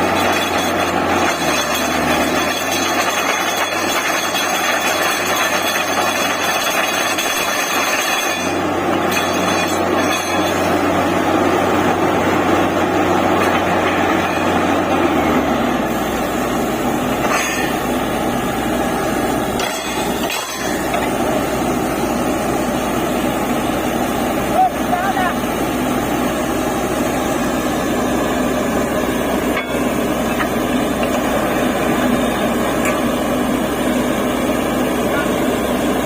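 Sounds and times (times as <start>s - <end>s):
drilling rig machinery din: 0.0s - 36.0s.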